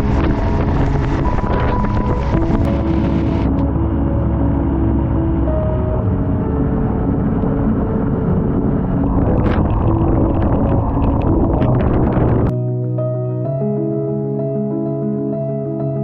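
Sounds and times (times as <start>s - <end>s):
wind and road noise: 0.0s - 12.5s
soft background music: 0.0s - 16.0s.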